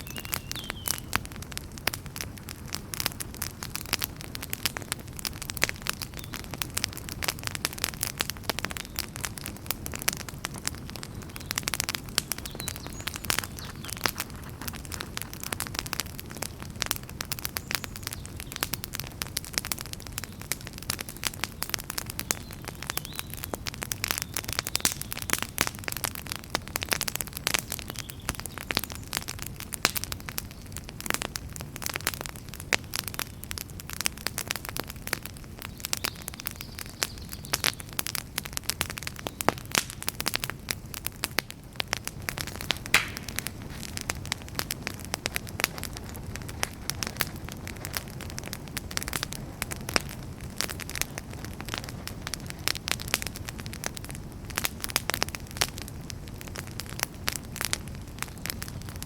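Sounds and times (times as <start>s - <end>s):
campfire popping and crackling: 0.0s - 59.0s.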